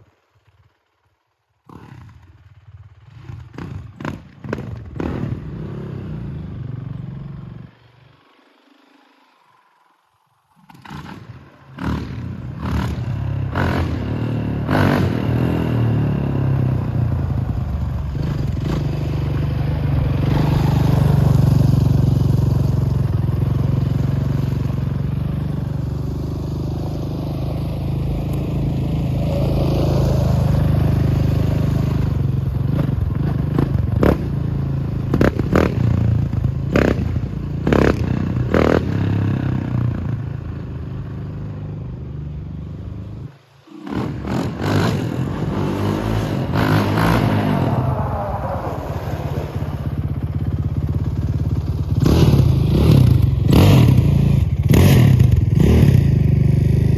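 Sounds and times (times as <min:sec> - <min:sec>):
quad engine running: 0:01.6 - 0:43.0, 0:43.8 - 0:56.9.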